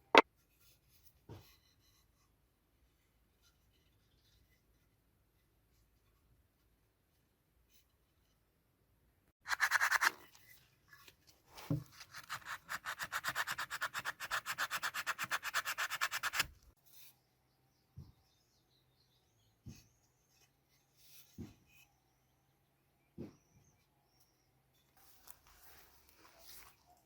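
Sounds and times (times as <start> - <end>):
hand sanding with abrasive: 9.5 - 10.2, 12.0 - 16.5.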